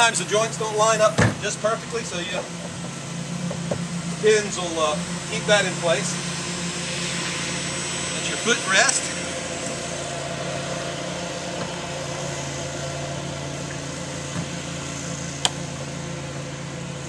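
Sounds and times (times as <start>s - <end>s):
low mechanical hum: 0.0s - 17.0s.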